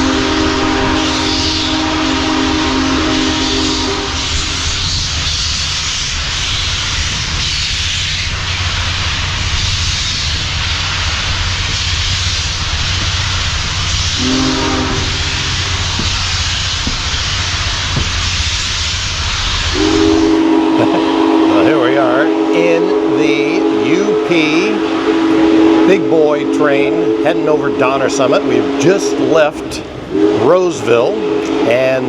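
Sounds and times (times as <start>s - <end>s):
steam whistle blast: 0.0s - 5.1s, 13.9s - 16.7s, 19.5s - 32.0s
steam train rolling: 0.0s - 32.0s.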